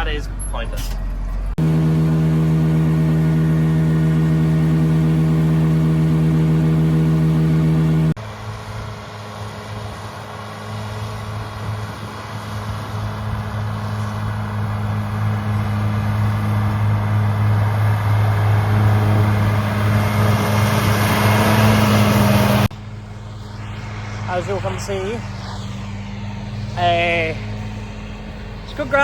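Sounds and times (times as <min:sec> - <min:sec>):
tractor engine running: 0:00.0 - 0:08.8.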